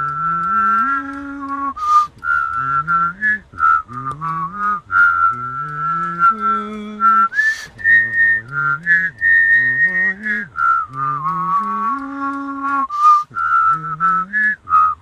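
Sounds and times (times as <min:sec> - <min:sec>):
man humming: 0:00.0 - 0:15.0
man whistling a melody: 0:00.0 - 0:15.0
short breath: 0:07.4 - 0:07.9.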